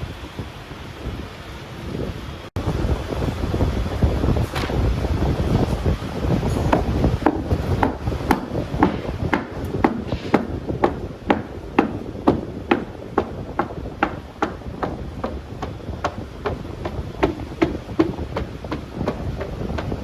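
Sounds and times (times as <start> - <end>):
low rumbling noise: 0.0 - 20.0
hammer on sheet metal: 6.4 - 19.9.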